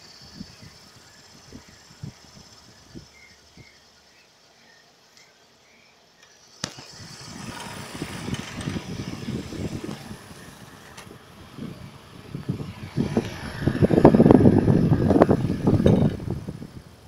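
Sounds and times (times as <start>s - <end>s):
fan motor running: 6.4s - 17.0s
air buffeting microphone: 6.7s - 17.0s.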